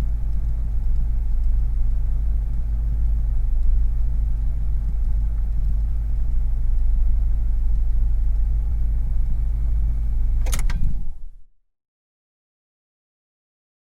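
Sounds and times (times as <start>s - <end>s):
car engine idling: 0.0s - 11.4s
ignition switch clicks: 10.4s - 11.1s.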